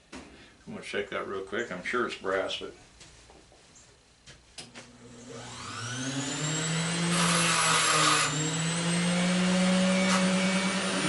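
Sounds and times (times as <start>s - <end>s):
electric grinder motor whining: 4.9s - 11.0s.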